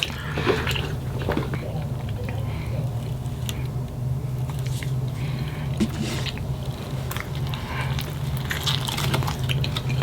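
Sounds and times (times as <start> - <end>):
steady low hum: 0.0 - 10.0
wet chewing and biting: 4.4 - 10.0.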